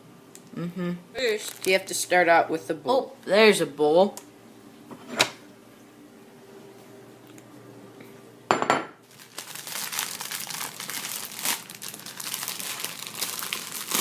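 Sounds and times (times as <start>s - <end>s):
plastic wrapping crinkling: 1.2s - 2.1s, 9.0s - 14.0s.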